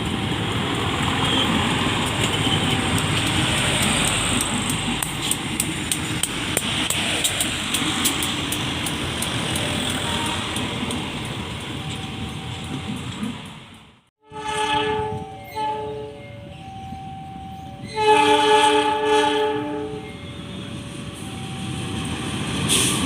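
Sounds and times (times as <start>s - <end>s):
wheels clicking over rail joints: 0.0s - 14.0s
train rumbling by: 0.0s - 23.0s
train horn chord: 14.2s - 16.2s, 17.9s - 20.0s.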